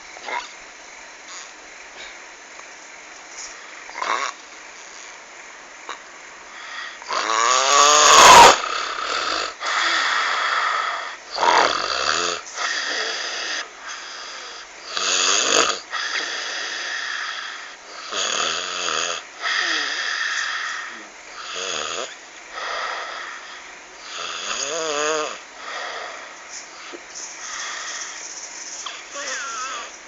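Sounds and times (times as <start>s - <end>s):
person snoring with croaky rasp: 0.2s - 0.5s, 1.3s - 1.6s, 3.9s - 4.4s, 6.6s - 17.4s, 18.0s - 23.4s, 24.0s - 30.0s
breathing noise: 6.5s - 7.1s, 9.6s - 11.5s, 19.4s - 21.1s, 22.5s - 24.1s, 25.6s - 30.0s.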